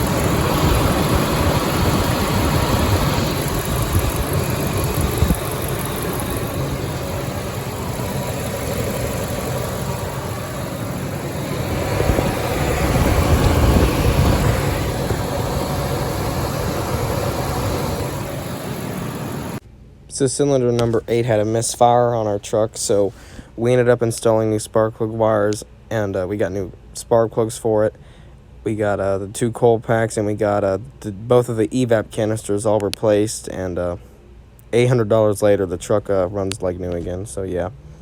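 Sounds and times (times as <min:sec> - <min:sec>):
truck engine running: 0:00.0 - 0:19.6.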